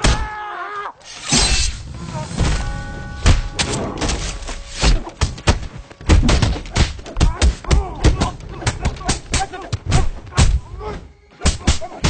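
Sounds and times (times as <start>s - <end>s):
punch and kick impacts: 4.8s - 10.7s.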